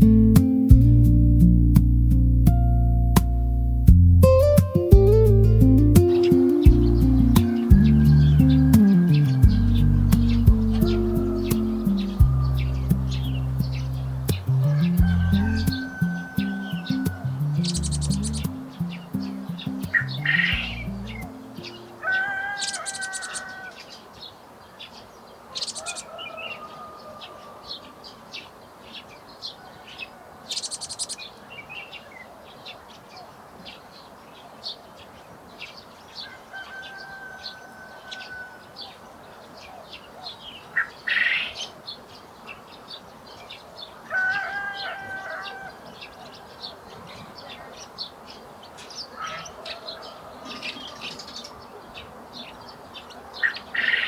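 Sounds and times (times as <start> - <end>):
small birds chirping: 4.5 - 54.0
bird whistles and trills: 17.6 - 18.5.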